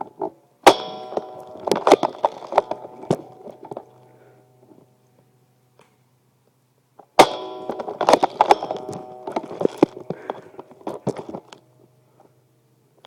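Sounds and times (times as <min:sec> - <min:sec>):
ringing tone: 0:07.2 - 0:12.2.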